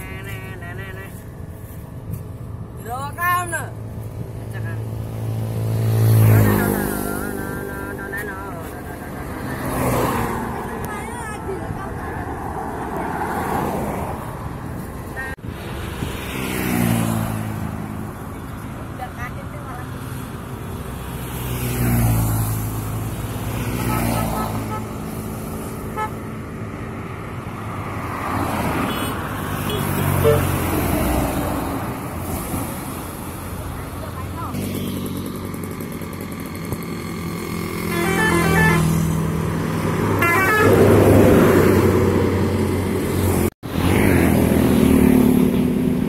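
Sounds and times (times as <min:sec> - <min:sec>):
heavy vehicle engine humming: 0:00.0 - 0:09.7, 0:28.9 - 0:43.5
passing traffic: 0:00.0 - 0:46.0
vehicles swishing past: 0:00.0 - 0:46.0
multi-tone bus horn melody: 0:25.8 - 0:26.2, 0:28.8 - 0:30.6, 0:37.8 - 0:39.2, 0:40.1 - 0:41.6.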